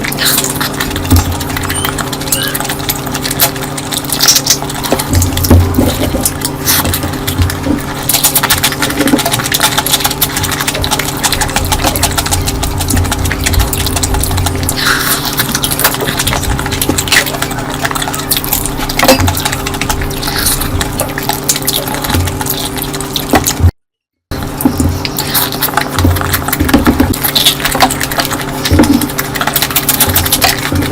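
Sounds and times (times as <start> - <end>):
steady low hum: 0.0 - 23.7
wet chewing: 0.0 - 23.7, 24.4 - 30.9.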